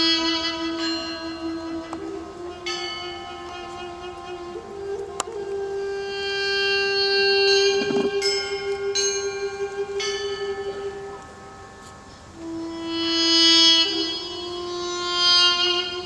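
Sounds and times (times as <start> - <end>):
duduk holding long note: 0.0 - 16.0
church bells ringing: 2.6 - 4.8, 7.6 - 12.4.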